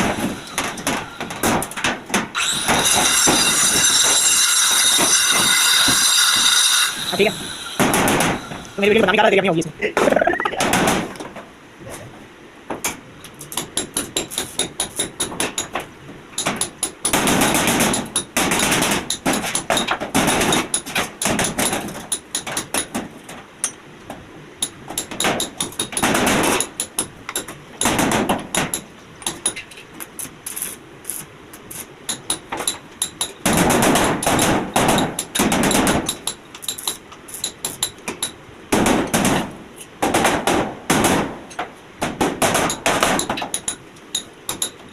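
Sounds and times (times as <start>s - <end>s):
hammer striking metal: 32.1s - 38.4s, 42.4s - 44.8s.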